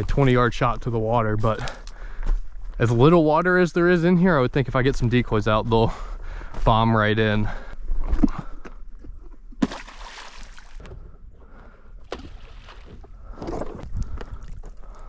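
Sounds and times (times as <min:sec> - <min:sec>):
water sloshing and splashing: 0:09.6 - 0:10.9, 0:12.0 - 0:15.0.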